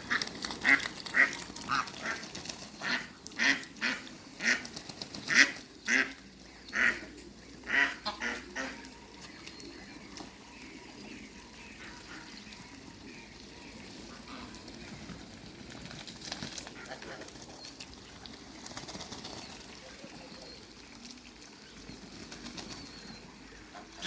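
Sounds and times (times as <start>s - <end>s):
wings flapping: 0.0s - 6.1s, 13.3s - 23.3s.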